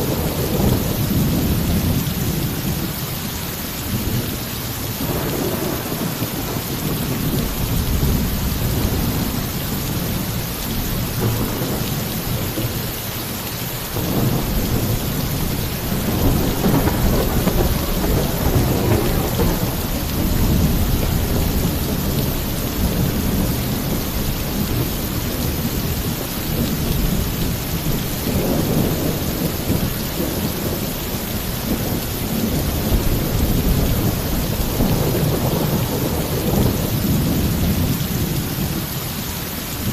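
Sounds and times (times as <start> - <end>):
thunder rumbling: 0.0 - 2.9, 3.9 - 39.9
heavy rain on a roof: 0.0 - 39.9.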